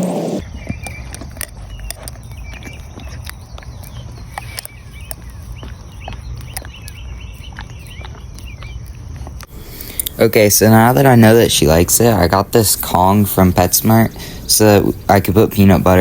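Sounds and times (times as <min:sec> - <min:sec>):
small birds chirping: 0:00.0 - 0:16.0
dog licking and smacking: 0:00.9 - 0:09.5.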